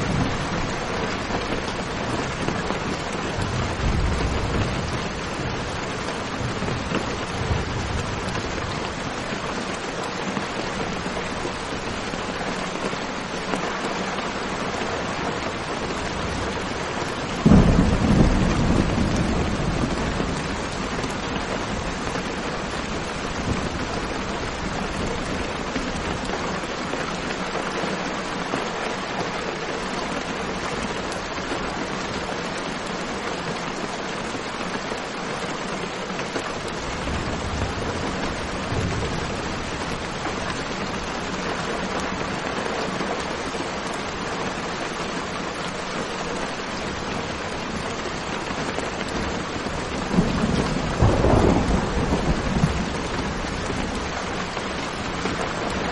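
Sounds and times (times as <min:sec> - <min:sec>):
steady rain hiss: 0:00.0 - 0:55.9
low thunder rumble: 0:17.4 - 0:22.1, 0:49.9 - 0:54.6.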